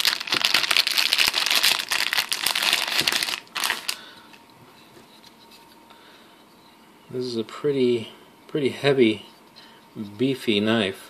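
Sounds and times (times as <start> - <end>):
crinkly packaging being unwrapped: 0.0 - 4.1.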